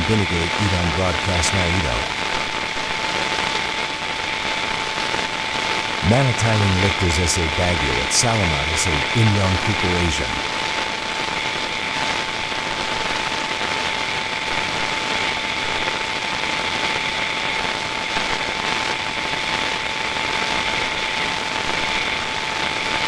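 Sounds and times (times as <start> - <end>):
continuous mid-pitched tone: 0.0 - 11.0
broadcast static hiss: 0.0 - 23.0.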